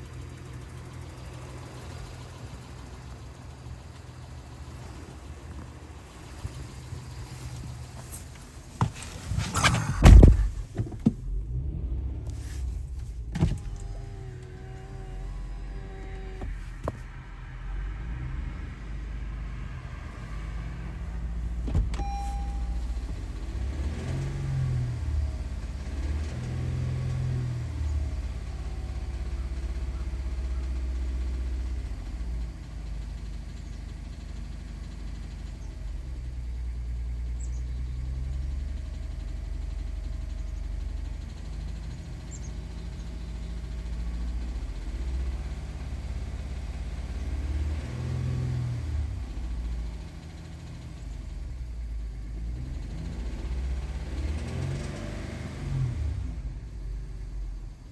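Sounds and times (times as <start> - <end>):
car engine running: 0.0 - 57.9.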